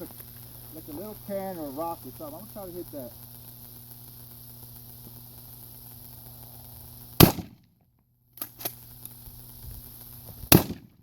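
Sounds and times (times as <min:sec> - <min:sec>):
shotgun shots: 0:07.2 - 0:07.6, 0:10.5 - 0:11.0.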